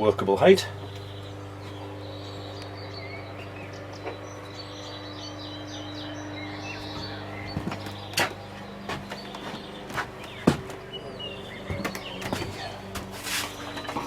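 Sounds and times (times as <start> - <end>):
birds chirping: 0.0 - 14.0
steady low hum: 0.0 - 14.0.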